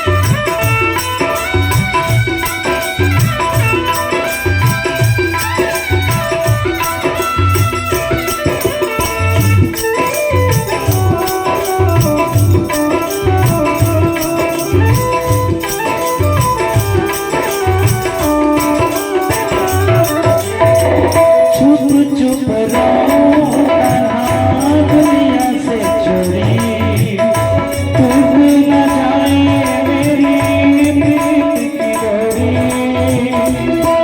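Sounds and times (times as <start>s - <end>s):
jingling percussion: 0.0s - 34.0s
steady drum beat: 0.0s - 34.0s
melody line: 18.7s - 25.1s.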